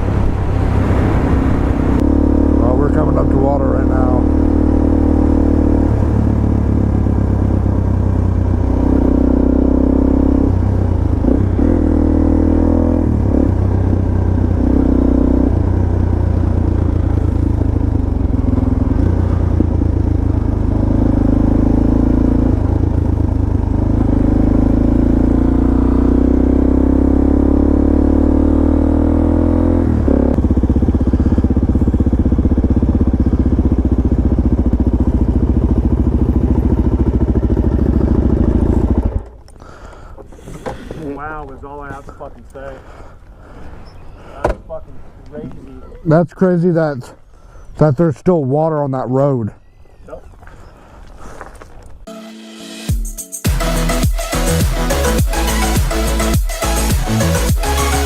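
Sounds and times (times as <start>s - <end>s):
motorcycle engine revving: 0.0s - 39.8s, 53.5s - 58.0s.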